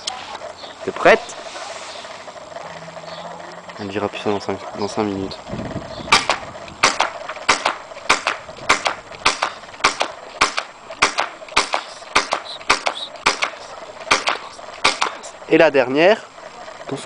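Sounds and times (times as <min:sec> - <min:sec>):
airsoft pistol firing: 0:06.1 - 0:15.2.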